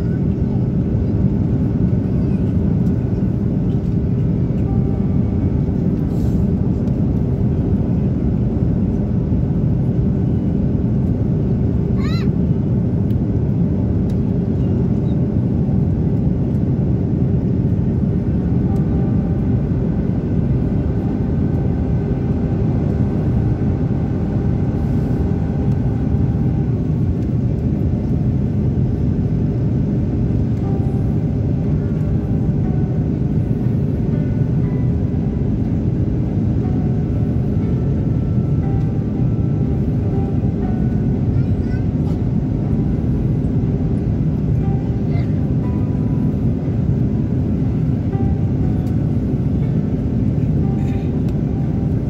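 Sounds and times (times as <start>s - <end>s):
jet engines rumbling: 0.0s - 52.0s
faint steady tones: 15.8s - 52.0s.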